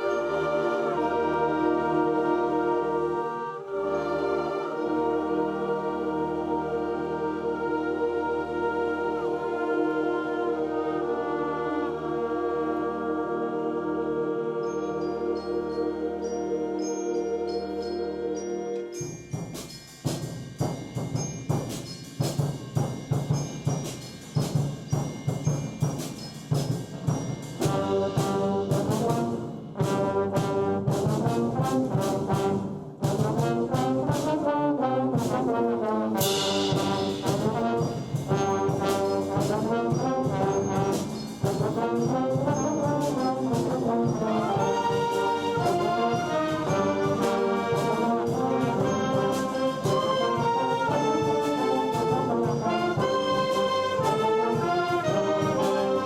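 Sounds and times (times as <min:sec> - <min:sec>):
concert band playing: 0:19.4 - 0:56.0.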